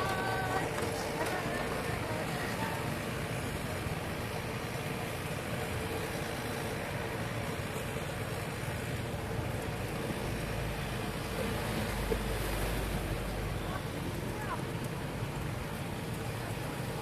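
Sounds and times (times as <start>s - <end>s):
road traffic noise: 0.0s - 17.0s.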